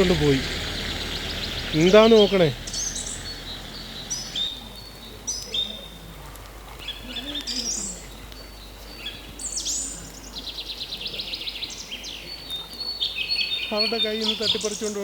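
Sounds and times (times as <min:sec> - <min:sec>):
fast rattling trill: 0:00.0 - 0:04.6
birds chirping and calling: 0:00.0 - 0:15.0.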